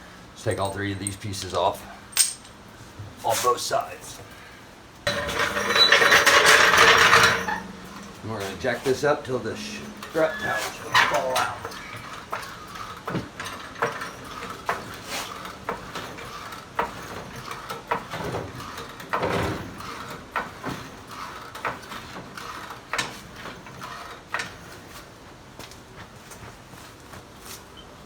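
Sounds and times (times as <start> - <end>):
jack clicking and clanking: 5.1 - 24.9.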